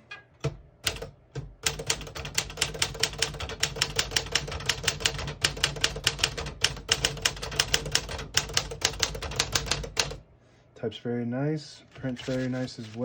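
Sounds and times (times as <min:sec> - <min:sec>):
typewriter key strikes: 0:00.4 - 0:10.2.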